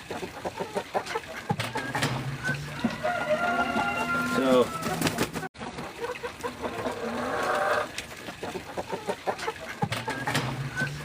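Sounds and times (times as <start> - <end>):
chickens clucking: 0.0 - 11.0
drawn-out chicken call: 0.0 - 11.0.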